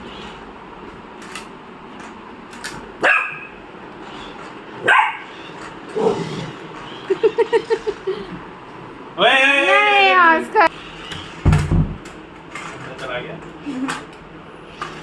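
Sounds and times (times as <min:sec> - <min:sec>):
steady background whir: 0:00.0 - 0:15.0
dog barking: 0:03.0 - 0:03.6, 0:04.8 - 0:05.4.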